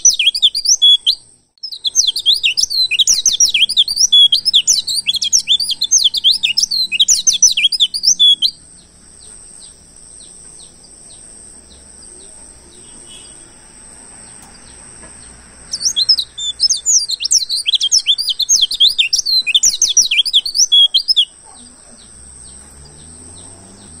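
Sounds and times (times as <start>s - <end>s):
bird twittering chirps: 0.0s - 24.0s.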